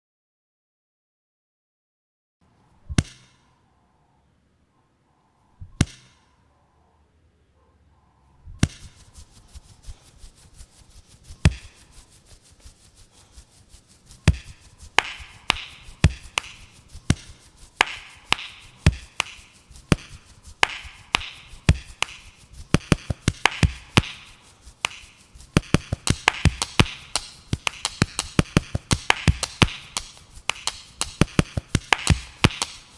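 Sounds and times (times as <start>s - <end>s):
short hissy bursts: 8.3s - 32.9s
sharp taps and knocks: 8.6s - 13.4s, 14.1s - 32.9s.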